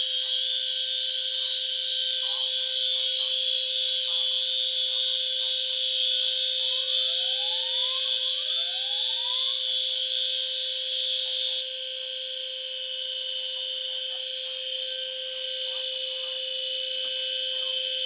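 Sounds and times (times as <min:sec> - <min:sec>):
rising alarm sweeps: 0:00.0 - 0:11.7
fire alarm tones: 0:00.0 - 0:18.0.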